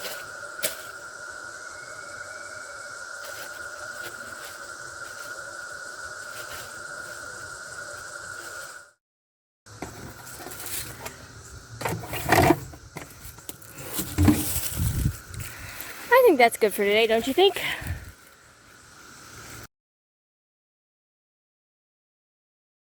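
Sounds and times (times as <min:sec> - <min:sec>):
rustling: 0:00.0 - 0:01.1, 0:03.1 - 0:08.7, 0:09.8 - 0:18.4.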